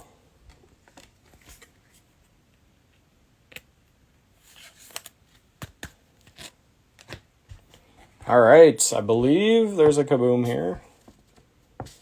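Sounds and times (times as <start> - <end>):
trading cards rustling: 4.4 - 11.5.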